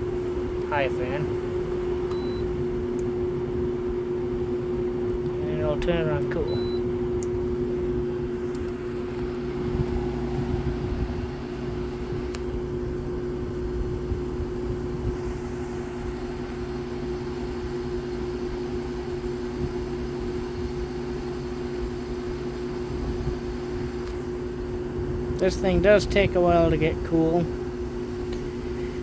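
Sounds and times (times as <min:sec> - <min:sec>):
air conditioner fan humming: 0:00.0 - 0:29.0
person talking: 0:00.6 - 0:01.3, 0:05.3 - 0:06.6, 0:25.4 - 0:27.5.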